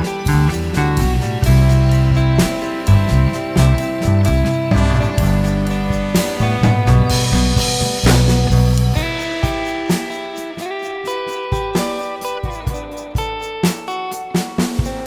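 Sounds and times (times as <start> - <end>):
deep bass notes: 0.0 - 9.2
plucked guitar music: 0.0 - 15.0.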